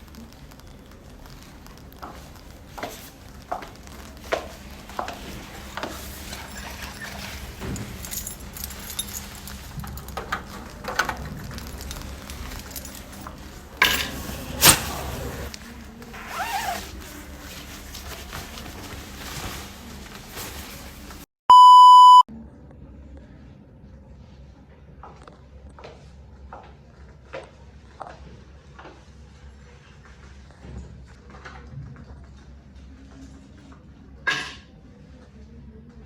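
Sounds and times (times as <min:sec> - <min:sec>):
electronic bleep tone: 0:21.5 - 0:22.3.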